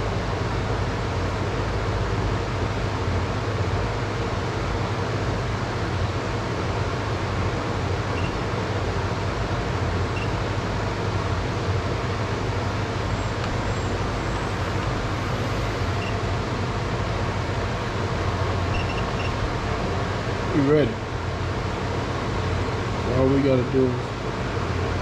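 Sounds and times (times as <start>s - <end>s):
rumbling background hum: 0.0s - 25.0s
faint high beeps: 8.2s - 8.4s, 10.2s - 10.4s, 18.7s - 19.4s.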